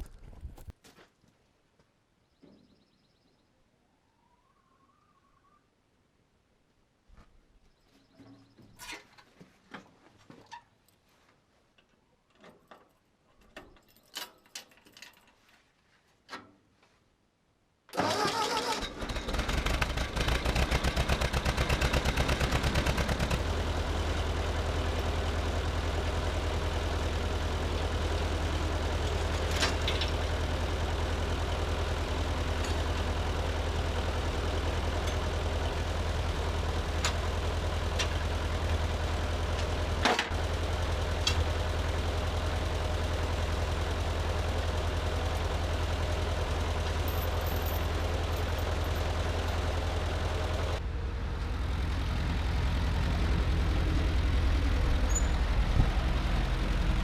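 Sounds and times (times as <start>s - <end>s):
tractor engine starting and idling: 17.9s - 57.0s.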